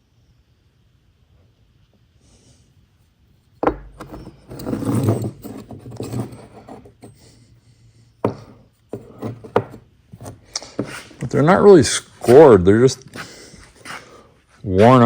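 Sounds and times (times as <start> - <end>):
rubbing and scraping: 3.9 - 7.5, 8.3 - 15.0.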